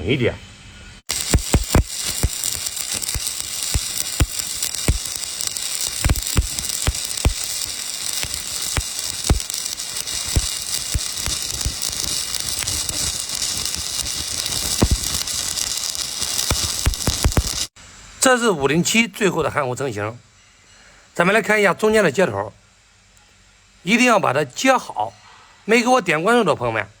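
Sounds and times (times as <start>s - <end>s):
welding arc crackling sizzle: 1.0s - 17.8s
sharp welding pops: 1.1s - 17.8s.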